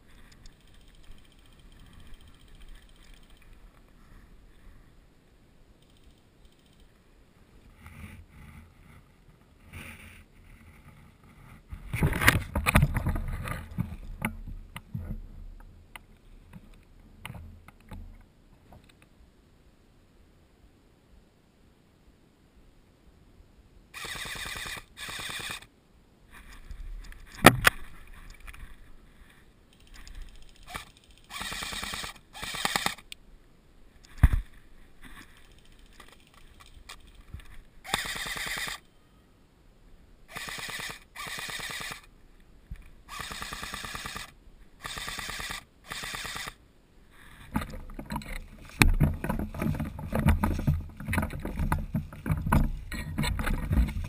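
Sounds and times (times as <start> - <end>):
rough rumbling rustle: 0.0 - 19.2, 23.9 - 54.0
airsoft rifles firing bursts: 24.0 - 25.7, 30.4 - 33.0, 37.8 - 38.8, 40.3 - 42.1, 43.1 - 46.6.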